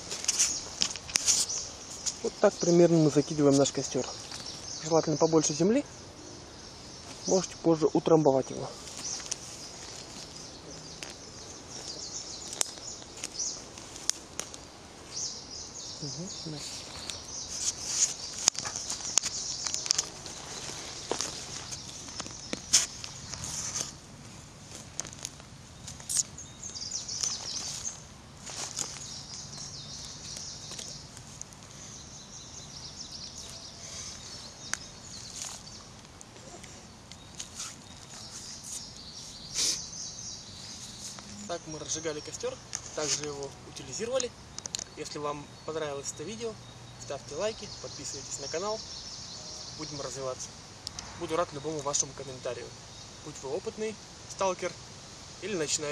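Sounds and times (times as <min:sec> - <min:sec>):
birds chirping: 0:00.0 - 0:55.9
small clicks and rustles: 0:24.7 - 0:31.8.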